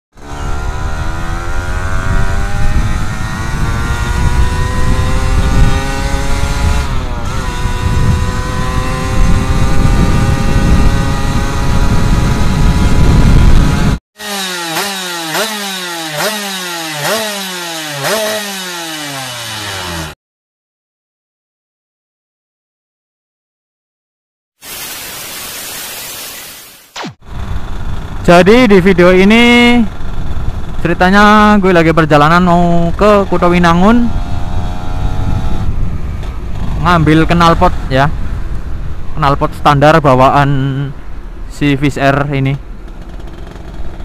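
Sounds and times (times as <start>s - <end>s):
two-stroke motorcycle engine revving: 0.2s - 20.2s, 27.3s - 37.9s, 42.8s - 44.0s.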